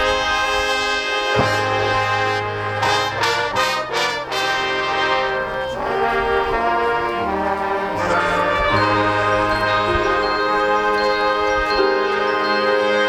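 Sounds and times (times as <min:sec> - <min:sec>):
marching band brass chords: 0:00.0 - 0:13.0
sharp percussion hits: 0:01.4 - 0:03.0
low bass notes: 0:01.4 - 0:12.3.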